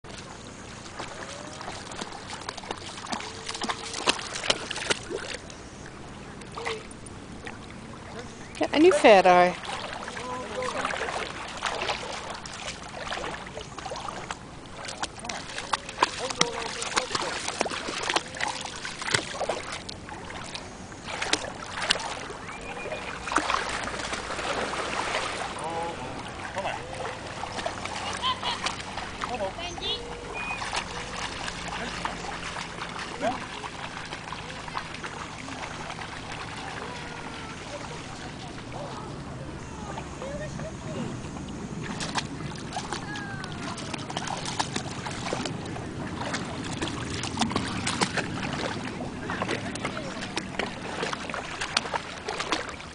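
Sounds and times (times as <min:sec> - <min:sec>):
water splashing at shoreline: 0:00.0 - 0:52.9.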